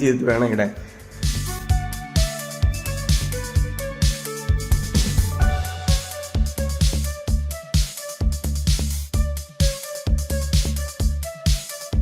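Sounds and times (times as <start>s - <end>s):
electronic music with beat: 0.8s - 12.0s.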